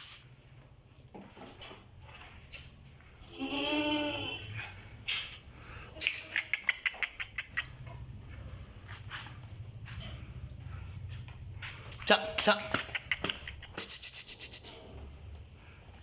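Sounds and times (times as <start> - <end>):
goat kid bleating: 3.2 - 4.6
sharp clicks: 6.0 - 7.8, 12.4 - 14.3.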